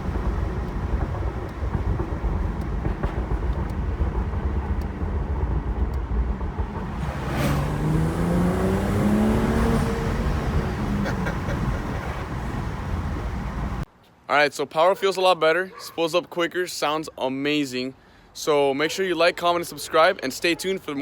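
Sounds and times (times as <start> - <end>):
car engine rumble: 0.0 - 13.9
engine accelerating: 0.0 - 13.9
exhaust crack: 0.0 - 13.9.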